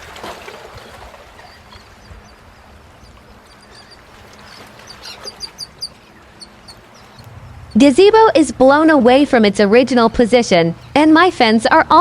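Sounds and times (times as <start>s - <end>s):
low rushing outdoor noise: 0.0s - 9.7s
small bird chirping: 1.5s - 7.3s.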